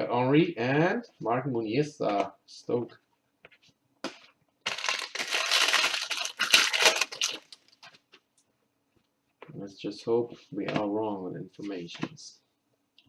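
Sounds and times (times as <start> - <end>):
wrapper crinkling: 4.6 - 8.0.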